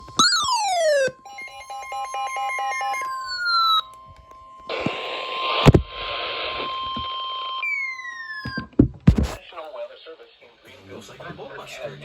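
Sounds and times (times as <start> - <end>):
static hiss: 4.7 - 7.5.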